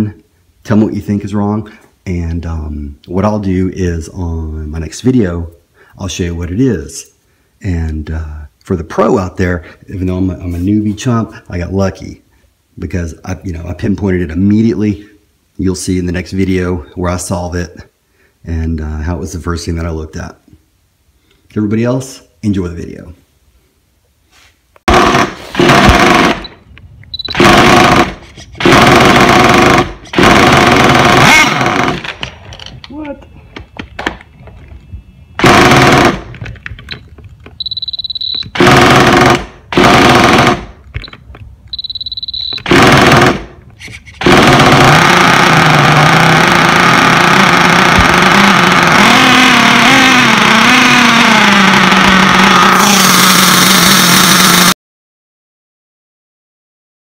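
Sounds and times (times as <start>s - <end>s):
model truck engine revving: 44.6s - 54.7s.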